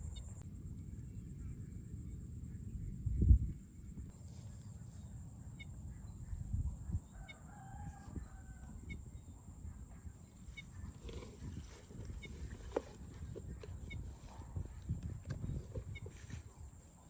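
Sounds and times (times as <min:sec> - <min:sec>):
rooster crowing: 0:07.1 - 0:08.8.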